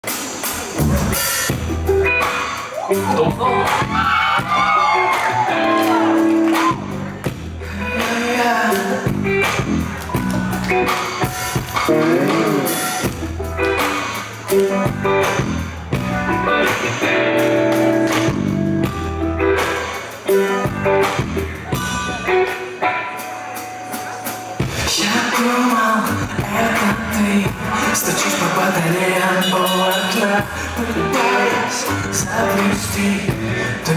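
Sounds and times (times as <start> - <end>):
drum kit beat: 0.0 - 33.9
guitar: 0.0 - 33.9
deep bass line: 0.6 - 2.3, 3.0 - 8.1, 9.0 - 13.9, 14.8 - 19.6, 20.6 - 22.4, 26.1 - 28.2, 31.9 - 33.9
person singing: 2.7 - 13.9, 24.0 - 33.9.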